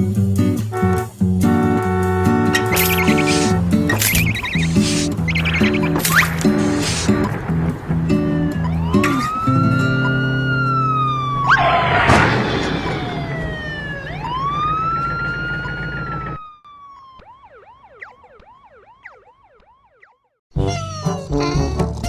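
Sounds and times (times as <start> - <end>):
background music: 0.0 - 11.2
police siren wailing: 2.2 - 20.4
yelping siren: 2.6 - 7.3, 8.3 - 20.4.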